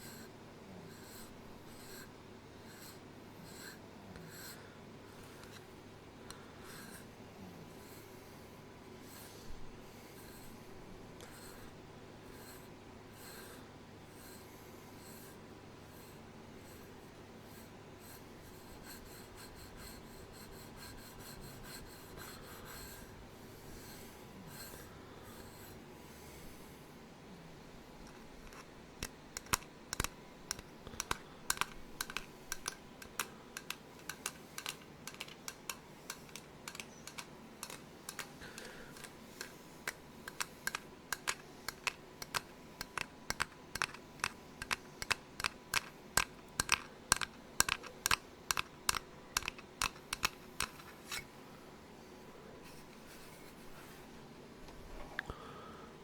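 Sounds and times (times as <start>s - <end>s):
sharp irregular clicks: 28.0s - 51.0s.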